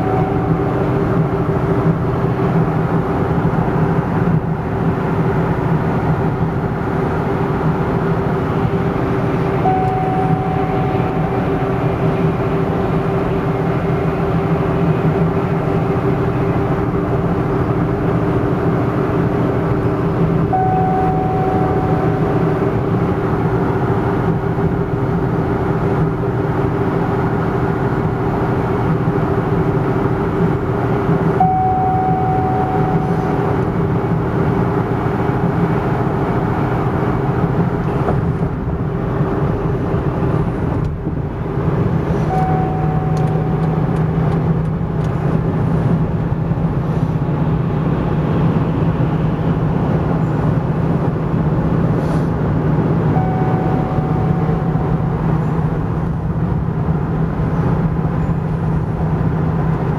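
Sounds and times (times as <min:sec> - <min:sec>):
short high tone: 0:00.0 - 0:00.8, 0:09.6 - 0:11.6, 0:20.5 - 0:22.6, 0:31.4 - 0:33.5, 0:42.2 - 0:43.8, 0:53.1 - 0:55.6
car engine humming: 0:00.0 - 0:59.9.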